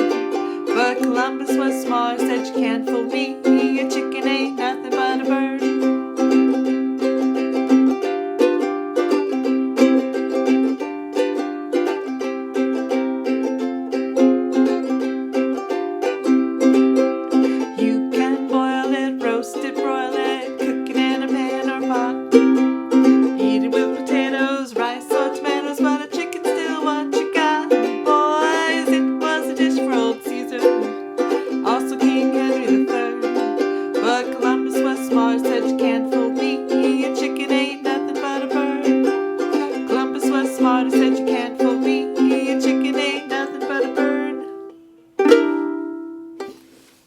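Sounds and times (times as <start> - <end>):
ukulele strumming: 0.0 - 47.0.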